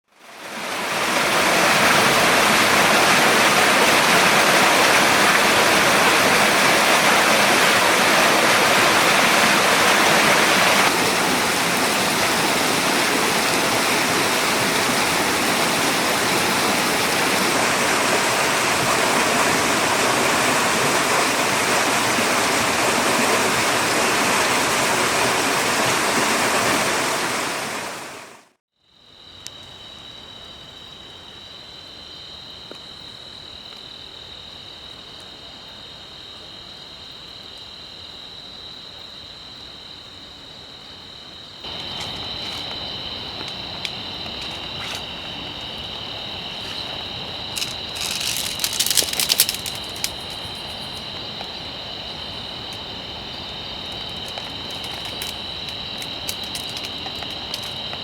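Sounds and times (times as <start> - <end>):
heavy rain falling: 0.3 - 28.5, 41.7 - 58.0.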